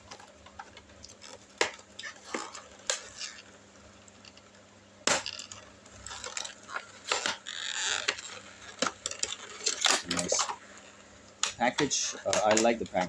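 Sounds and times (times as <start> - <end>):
plastic packaging rustle: 5.2 - 13.0
hard plastic clicking: 11.3 - 13.0.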